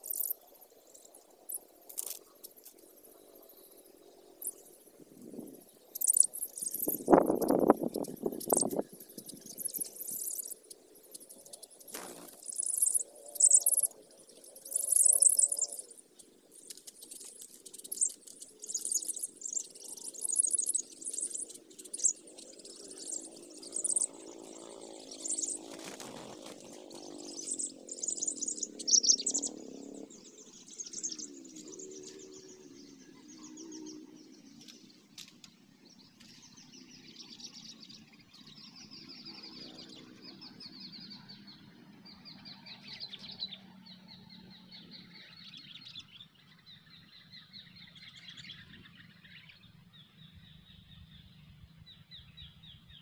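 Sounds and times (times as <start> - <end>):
bulbuls chirping: 4.4 - 29.7.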